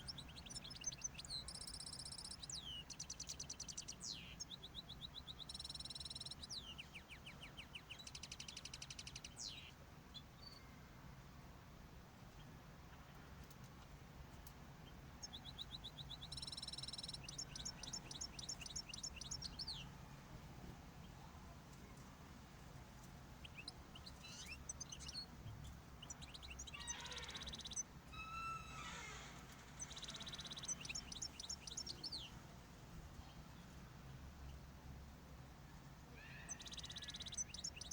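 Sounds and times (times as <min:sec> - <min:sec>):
finches singing and calling: 0:00.0 - 0:10.7, 0:14.8 - 0:20.0, 0:23.2 - 0:32.4, 0:36.2 - 0:37.9
faint low hum: 0:00.0 - 0:37.9.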